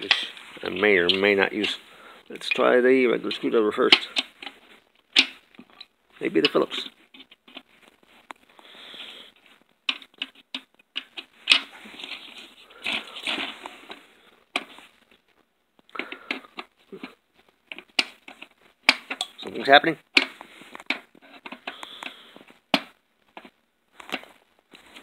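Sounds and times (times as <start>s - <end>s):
screwdriver clicking and scraping plastic: 9.9s - 13.5s.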